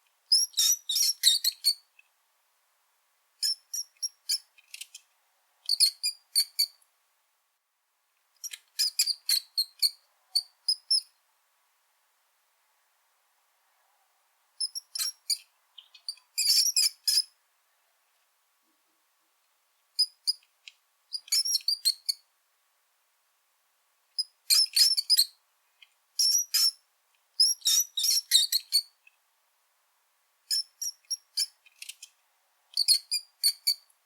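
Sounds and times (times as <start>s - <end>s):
rat squeaking: 0.3s - 1.8s, 14.6s - 17.3s, 21.1s - 22.2s, 24.2s - 25.3s, 26.2s - 26.8s, 27.4s - 28.9s, 30.5s - 32.1s, 32.8s - 33.9s.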